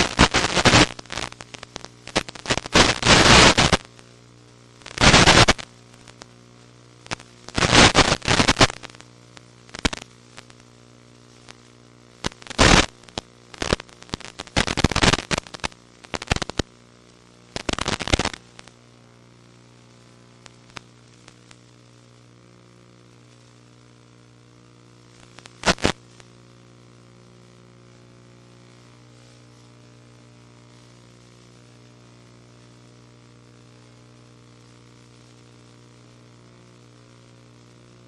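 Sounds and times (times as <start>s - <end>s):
radio static hiss bursts: 0.0s - 38.0s
steady electrical hum: 0.0s - 38.0s.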